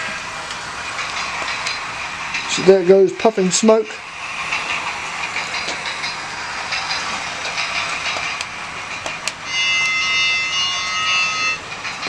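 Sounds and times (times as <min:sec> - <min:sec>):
toy train running on track: 0:00.0 - 0:12.0
electronic bell ringing: 0:09.5 - 0:11.6.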